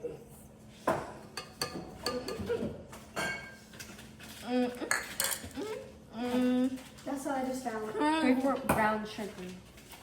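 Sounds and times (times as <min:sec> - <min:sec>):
kitchen utensils knocking and clinking: 0:01.3 - 0:03.6.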